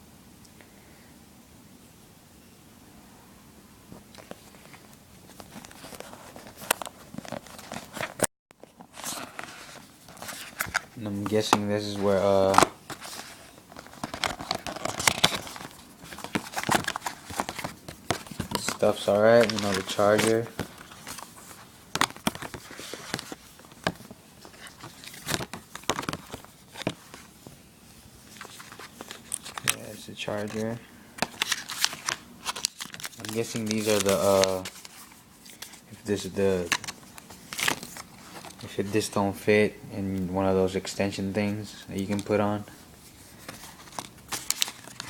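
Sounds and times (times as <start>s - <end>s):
packaging clicks taps and rustles: 5.3s - 27.3s, 28.3s - 35.8s, 36.6s - 38.8s, 42.0s - 42.6s, 43.4s - 45.0s.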